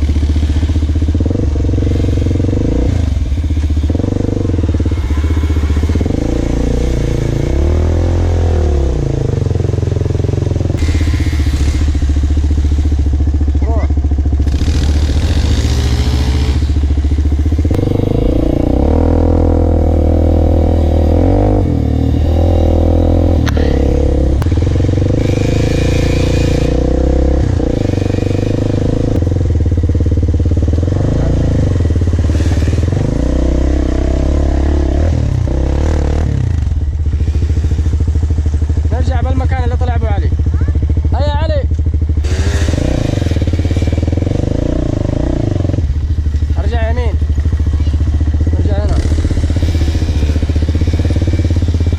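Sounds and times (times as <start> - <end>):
off-road bike engine revving: 0.0 - 51.9.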